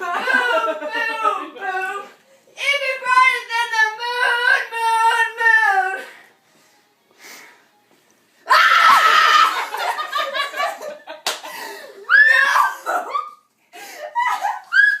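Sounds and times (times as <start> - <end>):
woman shrieking: 8.5 - 9.6, 12.1 - 13.4.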